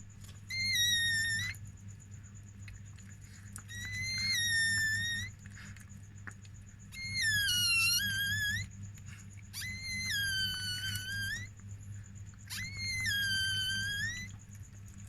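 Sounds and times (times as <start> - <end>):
puppy squealing cries: 0.5 - 1.6, 3.7 - 5.3, 6.9 - 8.7, 9.5 - 11.5, 12.5 - 14.4.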